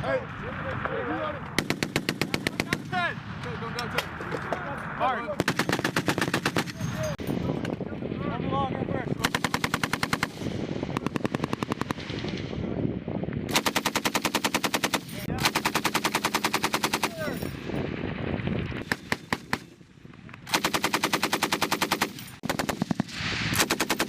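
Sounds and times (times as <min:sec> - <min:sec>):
machine gun bursts: 0:05.4 - 0:06.8, 0:13.5 - 0:17.3, 0:20.5 - 0:24.0.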